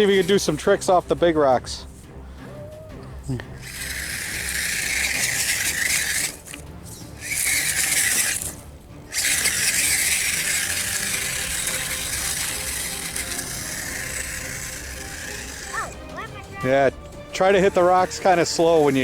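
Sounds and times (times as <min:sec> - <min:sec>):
toy car electric motor whirring: 0:00.0 - 0:01.0, 0:02.4 - 0:16.8, 0:18.5 - 0:19.0.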